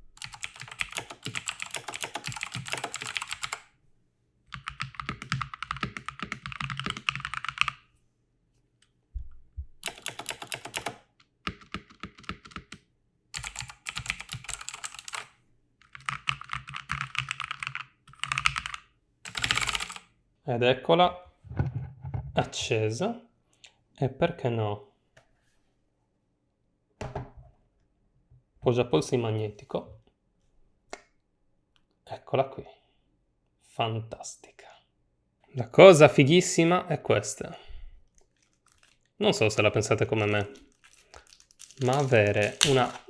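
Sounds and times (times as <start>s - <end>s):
fast typing on mechanical keyboard: 0.2s - 3.7s, 4.5s - 7.8s, 9.8s - 12.8s, 13.4s - 20.1s, 40.1s - 43.0s.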